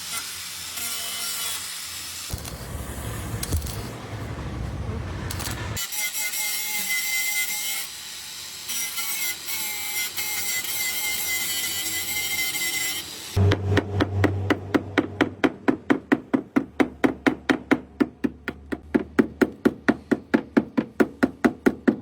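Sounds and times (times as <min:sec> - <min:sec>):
power tool scraping metal: 0:05.3 - 0:13.5.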